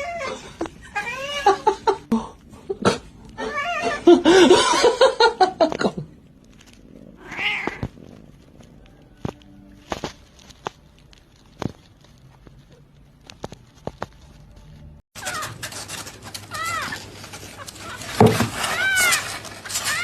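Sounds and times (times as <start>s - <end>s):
cat meowing and yowling: 0.0s - 1.7s, 3.4s - 4.1s, 7.2s - 7.8s.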